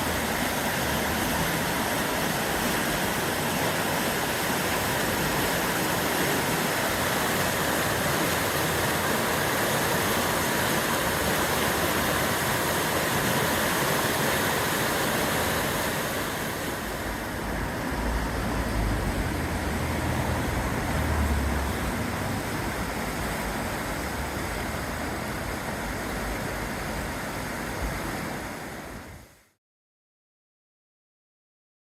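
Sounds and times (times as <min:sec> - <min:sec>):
river rushing: 0:00.0 - 0:29.5.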